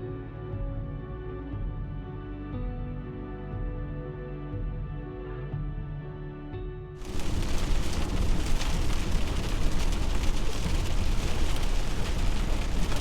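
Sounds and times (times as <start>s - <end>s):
music: 0.0s - 7.1s
wind buffeting microphone: 7.0s - 13.0s.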